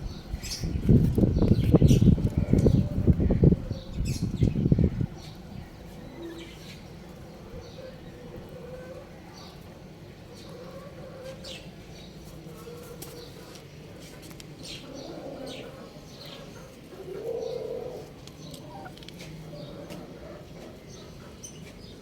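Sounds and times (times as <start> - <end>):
birds chirping: 0.0 - 22.0.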